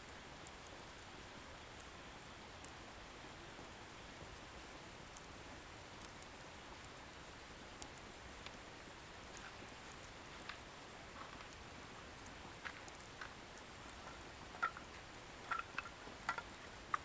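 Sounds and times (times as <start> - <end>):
bonfire hissing: 5.5 - 17.0
firewood crackling: 7.8 - 17.0.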